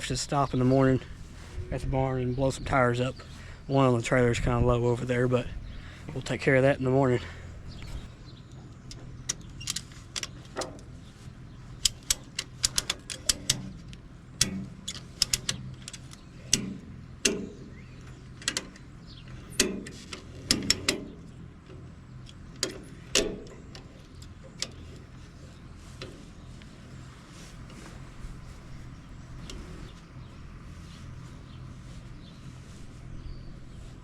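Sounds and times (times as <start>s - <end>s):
low steady hum: 0.0s - 8.4s, 24.6s - 34.0s.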